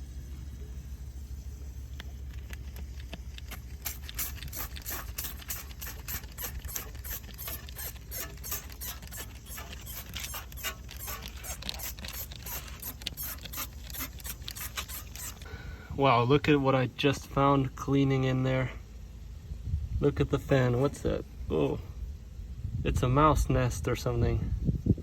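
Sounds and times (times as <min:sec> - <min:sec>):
steady low hum: 0:00.0 - 0:25.0
brush scraping strokes: 0:01.9 - 0:15.4.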